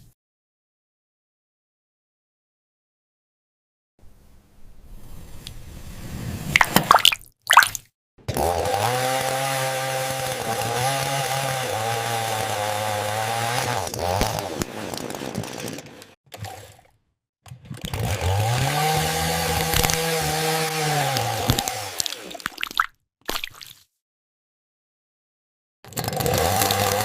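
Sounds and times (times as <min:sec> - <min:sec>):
chainsaw engine running: 0:08.3 - 0:16.7, 0:17.8 - 0:22.4, 0:25.9 - 0:27.0.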